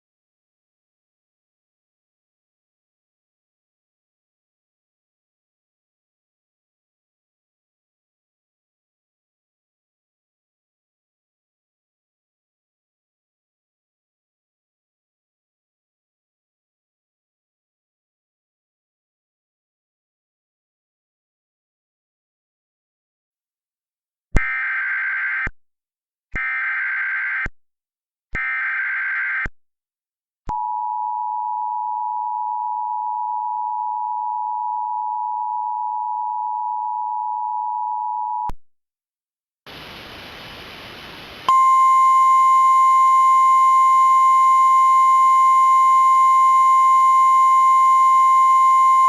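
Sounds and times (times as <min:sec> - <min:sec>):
hiss: 0:39.7 - 0:41.5
two-tone alert signal: 0:41.5 - 0:49.0.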